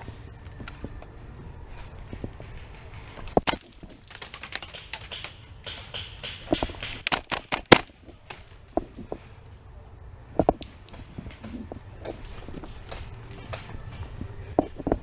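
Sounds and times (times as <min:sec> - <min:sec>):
airsoft gun firing clacks: 0:03.4 - 0:08.4.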